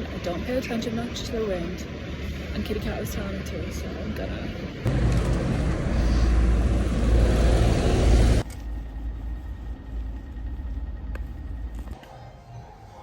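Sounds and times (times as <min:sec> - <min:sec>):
low rumble: 0:04.6 - 0:12.0.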